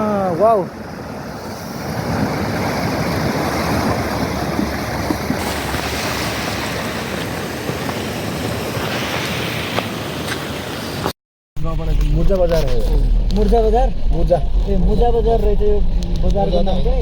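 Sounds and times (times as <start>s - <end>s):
rushing wind: 0.7s - 11.1s, 11.7s - 17.0s
vehicle road noise: 11.6s - 17.0s.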